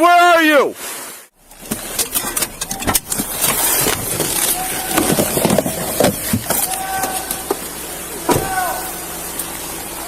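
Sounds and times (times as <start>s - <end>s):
clicks and knocks: 1.5s - 7.6s.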